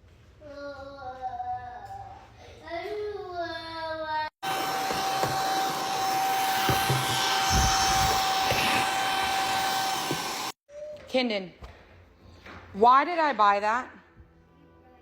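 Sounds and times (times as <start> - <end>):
electric fan whirring: 4.4 - 10.6.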